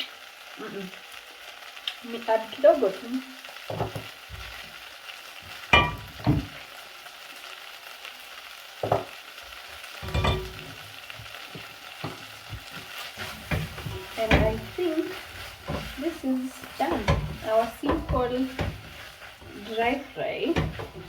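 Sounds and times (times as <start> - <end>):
food sizzling in a pan: 0.0 - 21.0
stirring scraping and knocking pan: 3.6 - 4.8, 5.4 - 6.7, 8.8 - 21.0.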